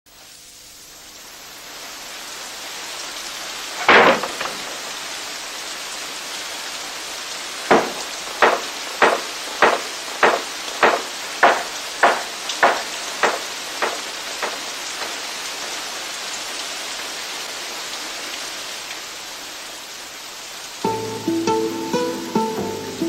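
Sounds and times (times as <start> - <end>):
recorded rain: 0.1 - 23.0
sharp knocks: 3.8 - 4.8, 7.7 - 15.2
loud sharp crack: 3.8 - 5.0, 7.7 - 15.2.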